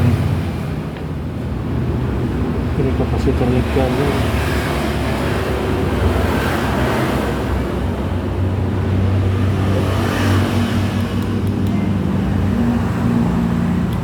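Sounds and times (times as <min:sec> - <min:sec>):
light clicks: 0:11.0 - 0:11.8.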